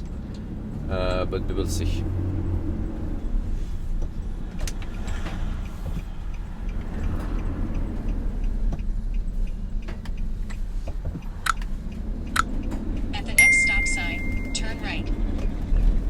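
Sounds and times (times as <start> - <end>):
vehicle road and engine rumble: 0.0 - 16.0.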